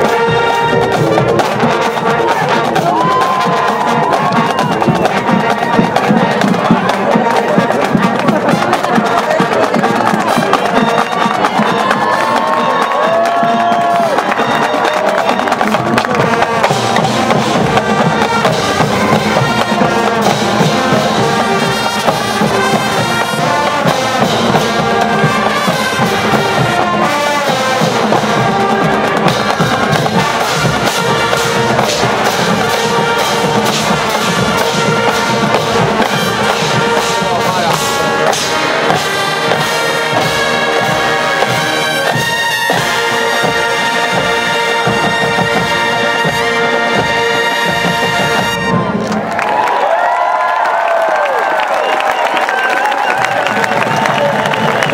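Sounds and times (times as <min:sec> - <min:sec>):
marching band drums: 0:00.0 - 0:54.9
trumpets and trombones: 0:00.0 - 0:54.9.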